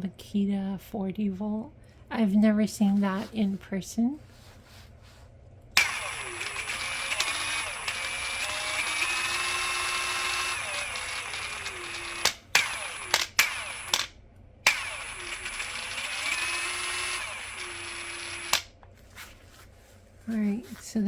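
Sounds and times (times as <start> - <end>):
impact wrench whining: 5.8 - 18.7
sharp clicks: 10.8 - 14.1.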